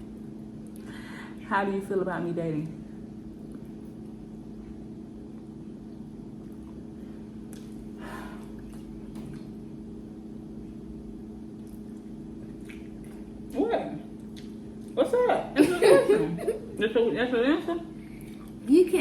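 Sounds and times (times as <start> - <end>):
low background hum: 0.0 - 19.0
wet eating sounds: 3.3 - 15.2, 18.0 - 18.7.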